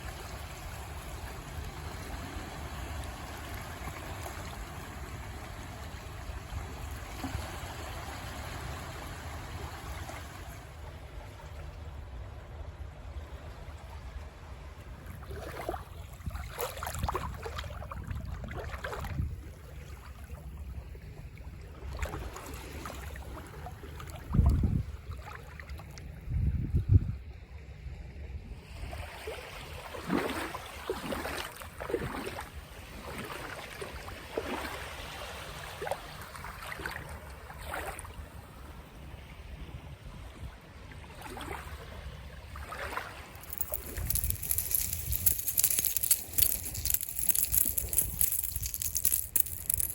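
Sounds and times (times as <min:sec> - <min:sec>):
wind rumbling on microphone: 0:24.2 - 0:25.2, 0:26.1 - 0:27.3.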